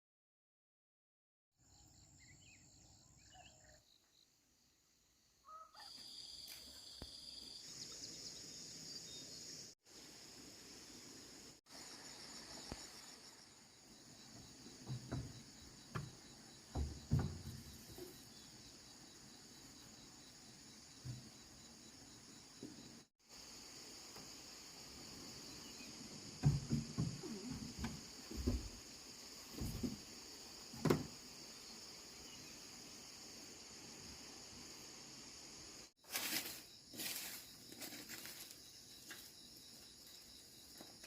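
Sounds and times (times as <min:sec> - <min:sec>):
short bird calls: 0:05.4 - 0:06.0
insects chorus: 0:05.4 - 0:41.0
dull knocks: 0:14.3 - 0:18.2, 0:26.4 - 0:28.8, 0:29.5 - 0:30.0, 0:30.8 - 0:31.1.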